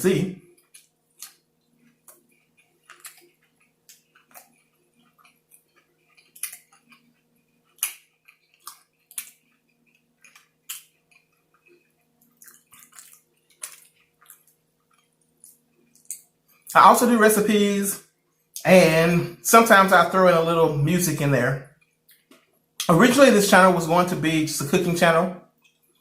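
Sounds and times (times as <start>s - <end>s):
faint steady hum: 0.0s - 26.0s
chewing with wet mouth clicks: 0.4s - 16.8s, 21.7s - 22.9s, 25.6s - 26.0s.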